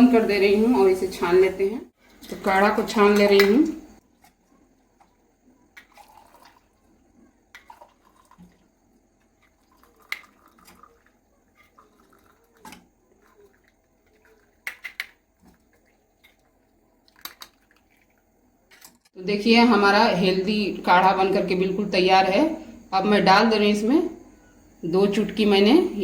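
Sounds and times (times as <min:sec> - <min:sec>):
liquid trickling through a strainer: 0:04.1 - 0:18.4.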